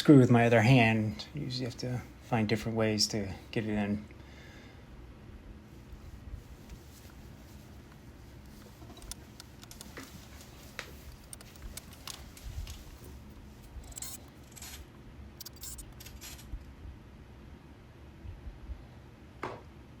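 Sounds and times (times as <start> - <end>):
small clicks from handling screws: 8.8 - 10.2, 10.8 - 12.8, 13.6 - 14.8, 15.4 - 16.5.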